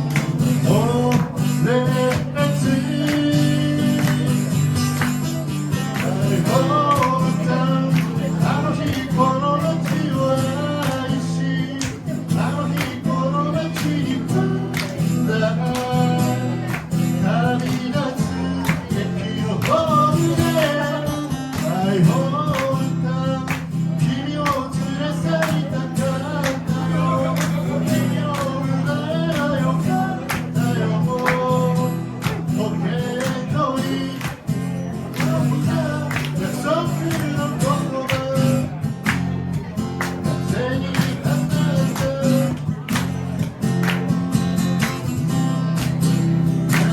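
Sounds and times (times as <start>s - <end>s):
acoustic guitar strumming: 0.0s - 46.9s
person singing: 39.6s - 42.9s.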